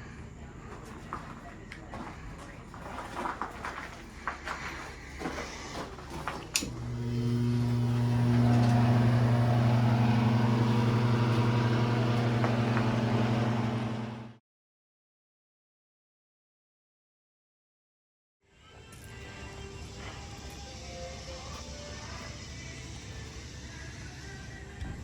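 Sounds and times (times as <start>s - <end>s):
electric fan motor humming: 6.4s - 14.4s.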